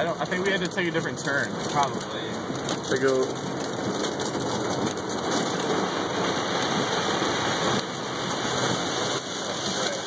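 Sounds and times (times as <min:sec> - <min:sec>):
heavy rain on car roof: 0:00.0 - 0:10.0.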